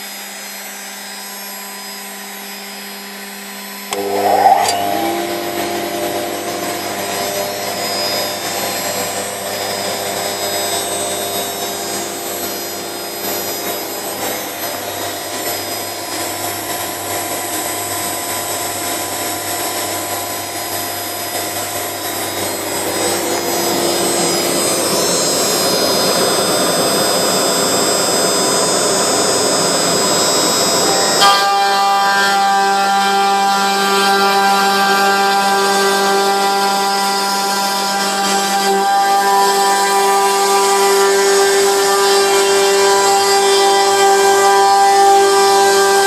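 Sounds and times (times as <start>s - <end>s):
router spindle cutting wood: 0.2s - 46.0s
dust extractor running: 3.9s - 16.5s, 20.4s - 31.2s.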